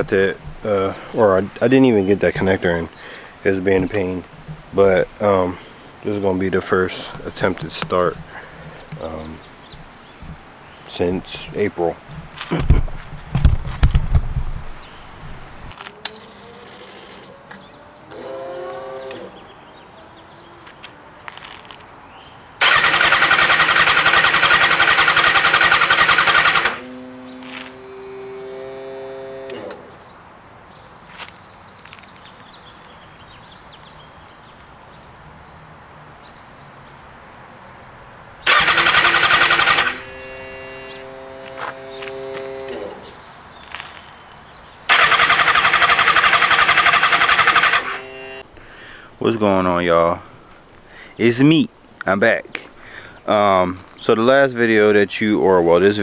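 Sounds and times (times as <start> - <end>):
electric whine of engine cranking: 0.0 - 19.6, 22.6 - 30.2, 38.4 - 43.8, 44.9 - 48.5.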